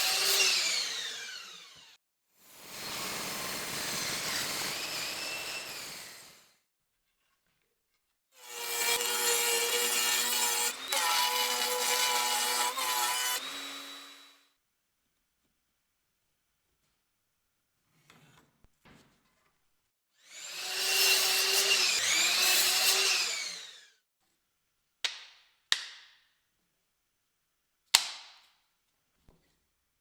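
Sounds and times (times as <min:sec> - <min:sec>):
small power drill running: 0:00.0 - 0:02.0, 0:20.2 - 0:23.9.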